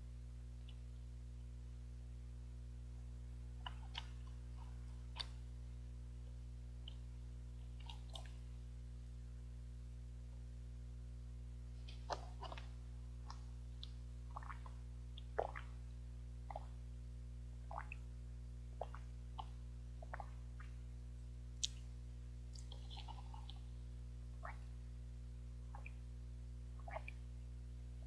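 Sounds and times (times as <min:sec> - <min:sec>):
low electrical hum: 0:00.0 - 0:28.0
swallowing gulps: 0:03.6 - 0:05.4, 0:11.9 - 0:15.8, 0:16.5 - 0:16.8, 0:17.7 - 0:18.0, 0:18.8 - 0:20.8, 0:22.5 - 0:23.7, 0:26.8 - 0:27.2.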